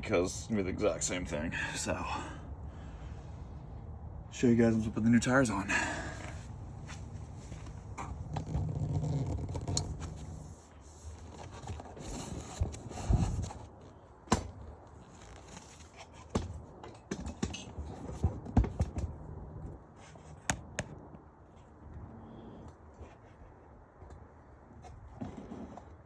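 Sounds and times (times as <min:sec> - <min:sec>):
hard objects clicking and knocking: 0:20.5 - 0:21.1.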